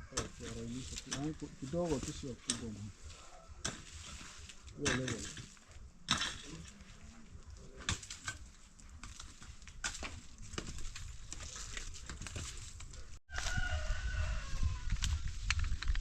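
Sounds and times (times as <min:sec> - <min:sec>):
rooster crowing: 0:13.3 - 0:15.2.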